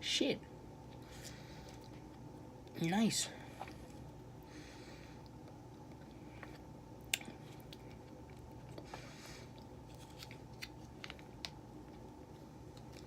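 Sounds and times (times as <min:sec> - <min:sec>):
faint steady hum: 0:00.0 - 0:13.0
soft breath: 0:03.3 - 0:05.3, 0:08.8 - 0:09.6
wet mouth eating sounds: 0:05.2 - 0:11.0.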